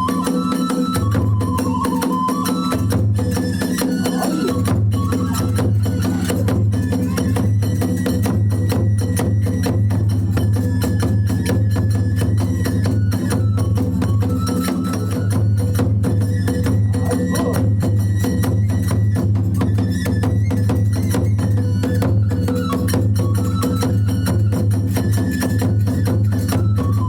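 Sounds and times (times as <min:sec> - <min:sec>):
hand cymbals clashing: 0:00.0 - 0:27.0
drums striking fast: 0:11.5 - 0:23.3.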